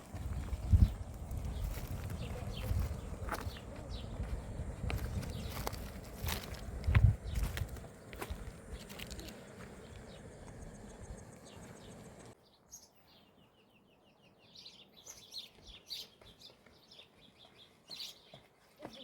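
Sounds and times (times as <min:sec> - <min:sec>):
outdoor rumble: 0:00.0 - 0:12.4
small birds chirping: 0:00.0 - 0:19.0.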